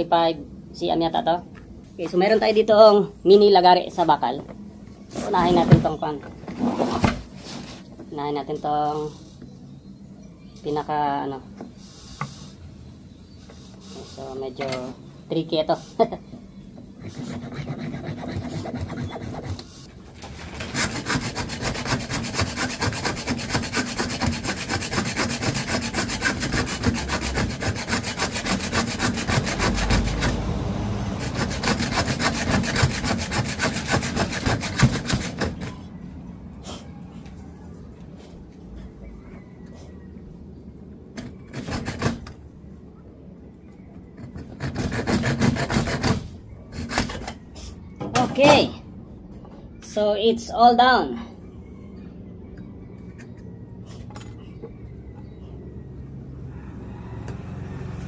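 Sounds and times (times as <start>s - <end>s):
hacksaw cutting metal: 20.6s - 30.4s, 31.2s - 35.7s, 44.2s - 47.4s.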